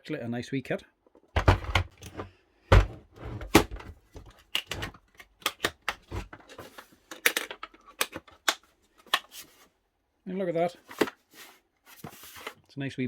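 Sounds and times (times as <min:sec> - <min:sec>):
tools clicking and knocking: 0:01.4 - 0:09.3.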